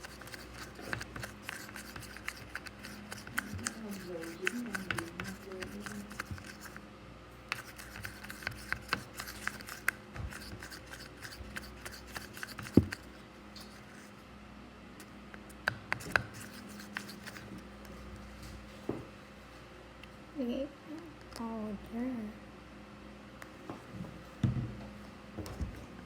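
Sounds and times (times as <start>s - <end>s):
light clicks and scratches: 0.0s - 6.8s, 7.5s - 14.1s, 16.0s - 18.0s.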